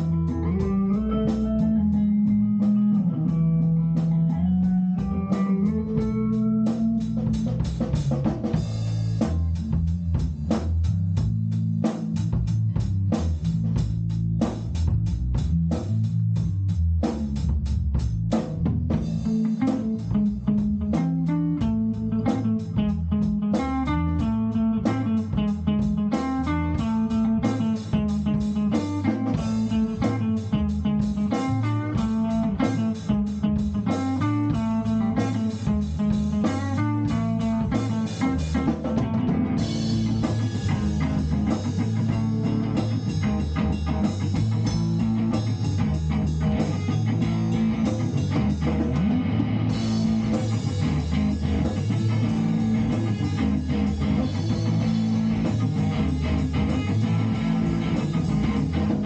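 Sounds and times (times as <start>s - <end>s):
guitar playing picked notes: 0.0s - 9.8s, 19.0s - 59.0s
drums: 0.0s - 59.0s
steady low bass line: 0.0s - 59.0s.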